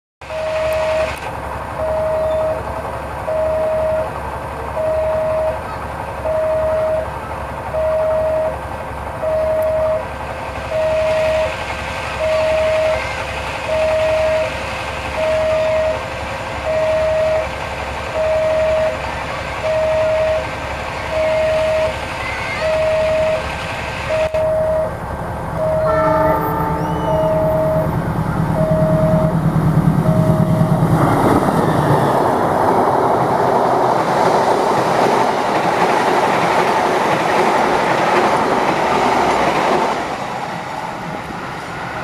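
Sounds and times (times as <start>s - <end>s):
level crossing alarm beeping: 0.3s - 1.2s, 1.8s - 8.6s, 9.2s - 10.1s, 10.7s - 11.5s, 12.2s - 23.5s, 24.1s - 30.9s
rushing noise: 24.9s - 42.0s.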